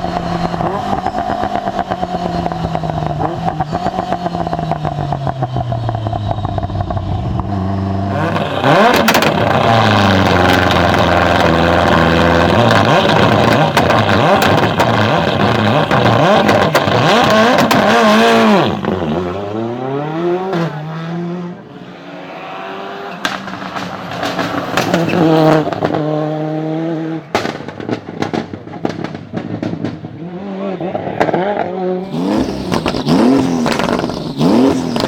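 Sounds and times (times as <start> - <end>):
turbocharged car engine revving: 0.0 - 35.0.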